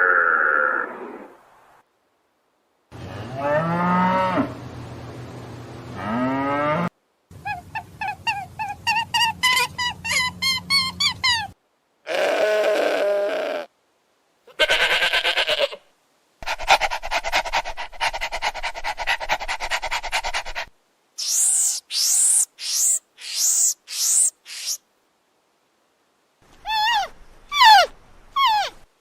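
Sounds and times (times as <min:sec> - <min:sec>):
bleat-like animal call: 0:12.1 - 0:13.7, 0:14.5 - 0:15.9
short high falling cries: 0:26.6 - 0:28.9.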